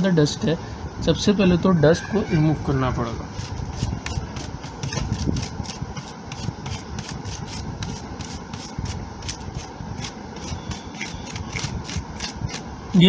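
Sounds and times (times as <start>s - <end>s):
brush scrubbing: 3.1s - 12.6s.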